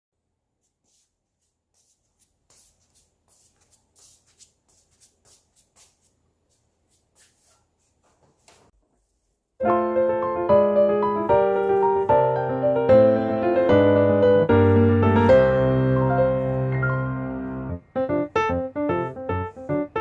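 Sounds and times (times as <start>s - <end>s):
piano background music: 9.6s - 20.0s.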